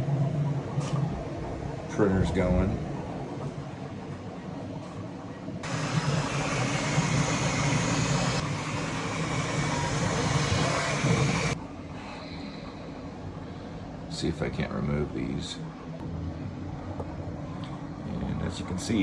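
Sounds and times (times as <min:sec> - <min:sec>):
printer mechanical whir: 0:00.0 - 0:11.6
fan noise: 0:00.0 - 0:19.0.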